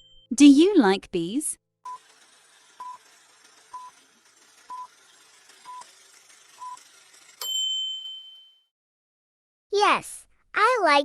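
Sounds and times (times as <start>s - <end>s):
bright ringing ding: 0.0s - 0.3s, 7.4s - 8.7s.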